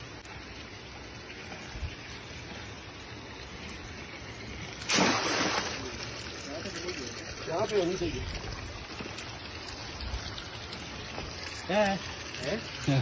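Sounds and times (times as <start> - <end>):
flowing water rushing: 0.0 - 13.0
loud splash: 4.8 - 6.2.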